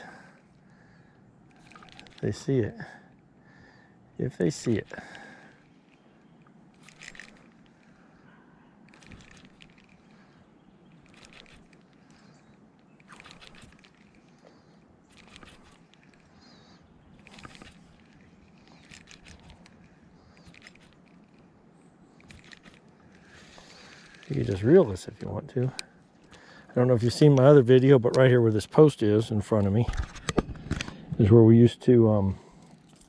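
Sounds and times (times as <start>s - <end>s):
spinning reel cranking: 6.7s - 7.6s, 8.9s - 10.0s, 22.2s - 22.8s.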